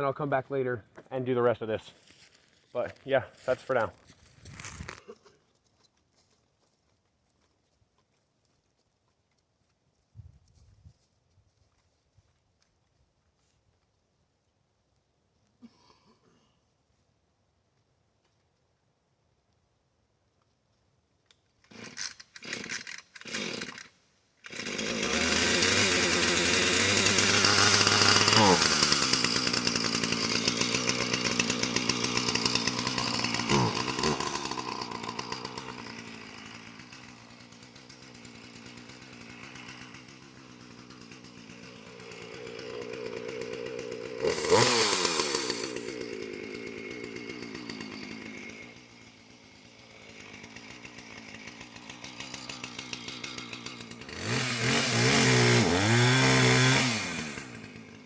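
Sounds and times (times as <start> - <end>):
chainsaw cutting wood: 3.0 - 5.3, 21.6 - 58.0
chainsaw idling: 21.7 - 58.0.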